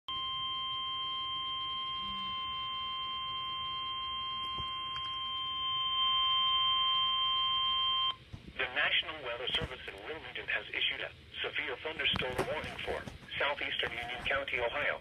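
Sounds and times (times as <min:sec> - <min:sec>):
steady electronic alarm tone: 0:00.1 - 0:08.2.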